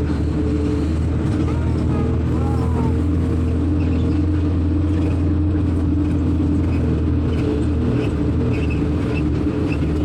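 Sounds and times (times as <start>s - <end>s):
vehicle engine humming: 0.0s - 10.0s.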